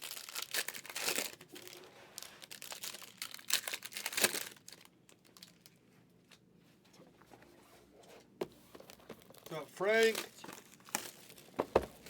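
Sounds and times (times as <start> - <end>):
plastic wrapping crinkling: 0.0 - 5.8, 8.7 - 12.0.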